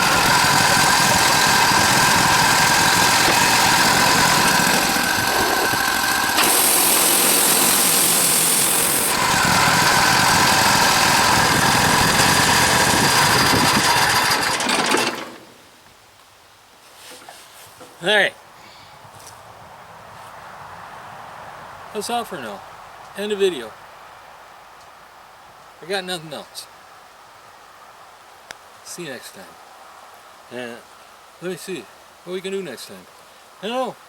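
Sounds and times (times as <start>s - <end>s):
engine running: 0.0s - 15.6s.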